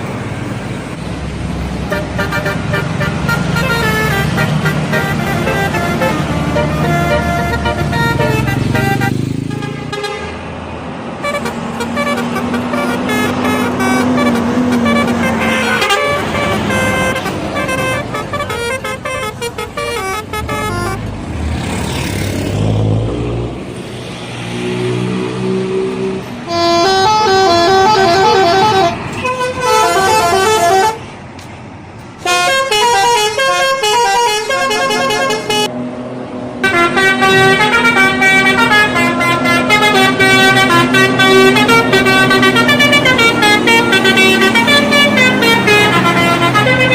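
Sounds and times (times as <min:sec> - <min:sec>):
bus engine rumble: 0:00.0 - 0:46.9
melodic bus air horns: 0:01.7 - 0:10.5, 0:11.2 - 0:21.1, 0:26.1 - 0:31.1, 0:32.2 - 0:35.7, 0:36.6 - 0:46.9.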